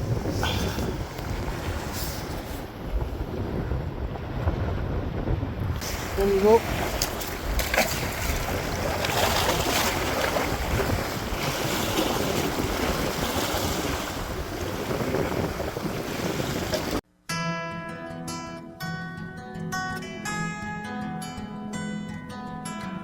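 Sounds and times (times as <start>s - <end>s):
sea waves on shore: 0.0s - 17.0s
wind buffeting microphone: 0.0s - 17.0s
acoustic guitar music: 17.3s - 23.0s.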